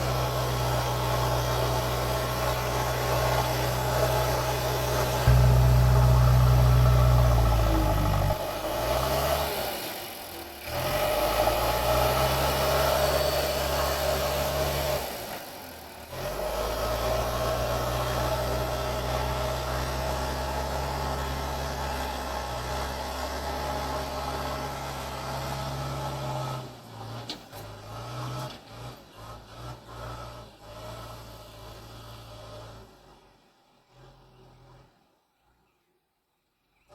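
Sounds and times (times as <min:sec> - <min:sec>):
diesel engine running: 0:00.0 - 0:15.0.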